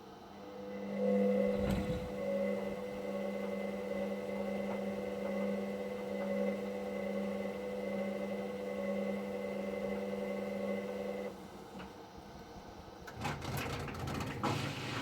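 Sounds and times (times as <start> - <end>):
washer-dryer motor hum: 0.0 - 15.0
low thud: 1.6 - 2.2.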